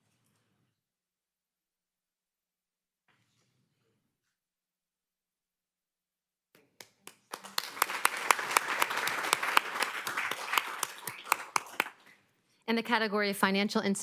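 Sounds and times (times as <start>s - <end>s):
audience applauding: 6.8s - 12.2s.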